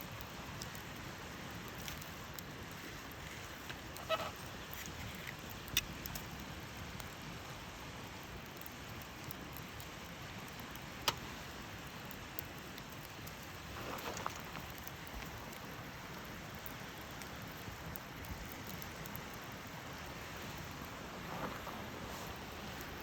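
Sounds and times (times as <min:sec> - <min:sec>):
campfire crackling: 0:00.0 - 0:23.0.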